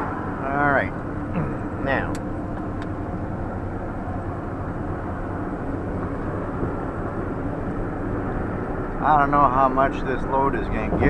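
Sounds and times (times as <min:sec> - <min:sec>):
van engine and road noise: 0:00.0 - 0:11.0.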